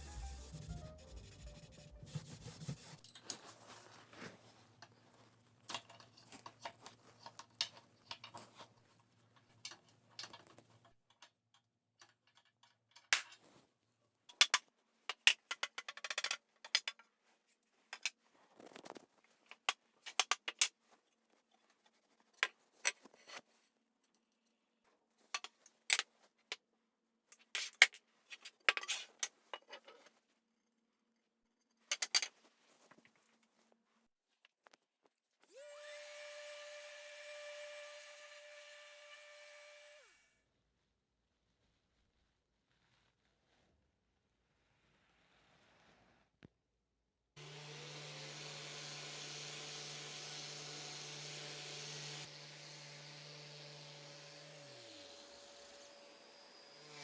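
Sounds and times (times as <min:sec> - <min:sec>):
background music: 0:00.0 - 0:02.8
handling rubs and scrapes: 0:00.0 - 0:09.5.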